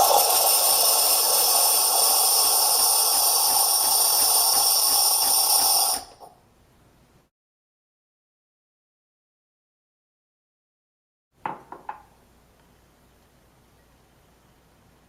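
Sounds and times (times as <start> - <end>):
steam wand hissing: 0.0 - 6.4.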